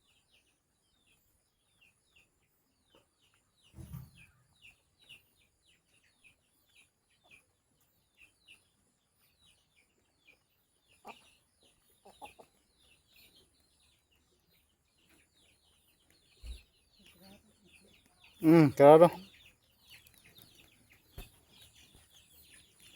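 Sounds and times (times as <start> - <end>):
chickens peeping: 0.1 - 22.9
chickens clucking: 10.0 - 13.4, 15.1 - 22.9.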